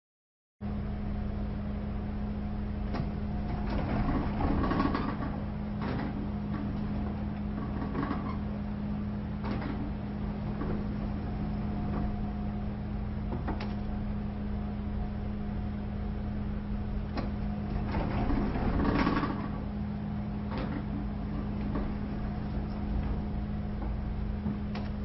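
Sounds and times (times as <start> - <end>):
sliding door motor hum: 2.6 - 25.0
metal door sliding: 2.9 - 8.5, 9.4 - 12.4, 17.1 - 19.7, 20.4 - 24.0.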